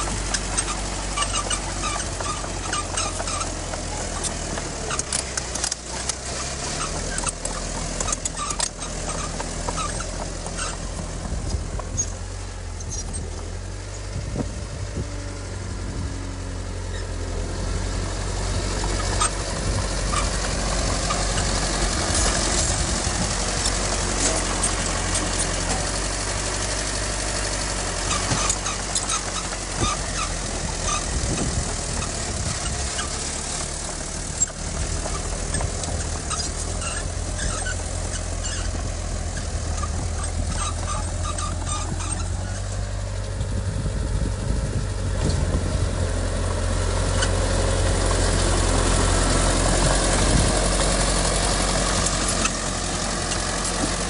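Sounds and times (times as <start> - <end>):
metallic clicks and clanks: 0.0 - 10.8
heavy diesel engine running: 0.0 - 54.0.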